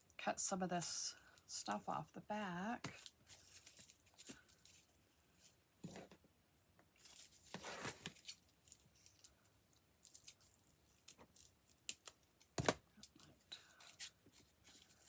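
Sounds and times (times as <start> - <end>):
paper rustling: 7.0 - 9.3.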